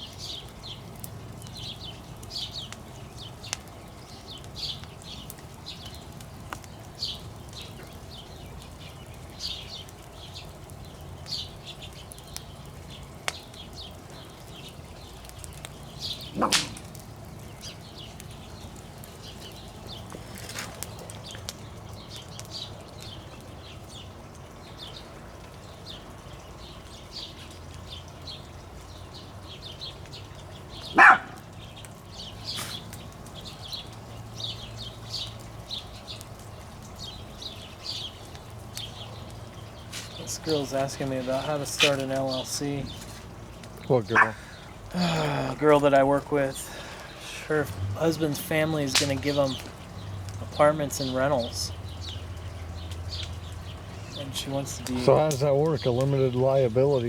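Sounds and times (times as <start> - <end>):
loud sharp sounds: 16.3 - 16.9.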